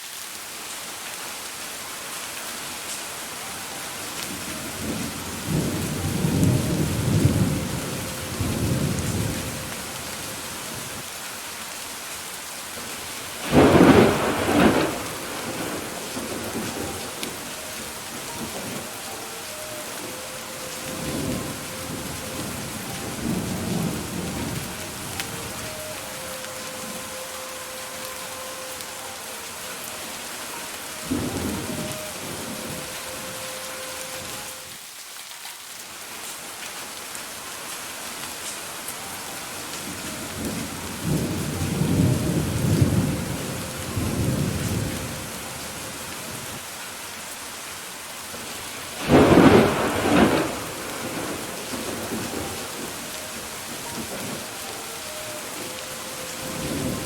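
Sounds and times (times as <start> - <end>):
steady rain falling: 0.0 - 57.0
thunder rolling: 4.4 - 11.0, 13.4 - 27.3, 31.0 - 33.4, 40.4 - 45.2, 49.0 - 57.0.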